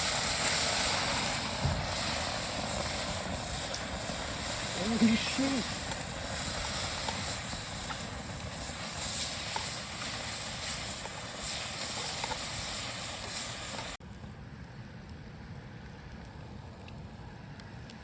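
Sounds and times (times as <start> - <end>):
sausages sizzling with pops: 0.0 - 14.0.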